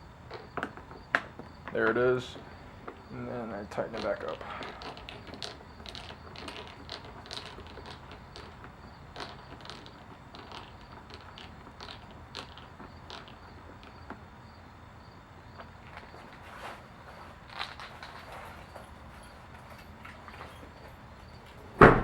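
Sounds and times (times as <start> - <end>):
small clicks and creaks: 0.2 - 14.3, 15.5 - 21.8.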